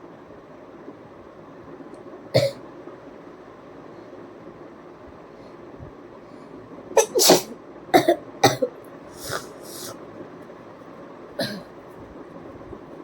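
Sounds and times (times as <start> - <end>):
person sneezing: 7.0 - 7.6, 8.6 - 10.0
breathy puffs: 9.1 - 10.0.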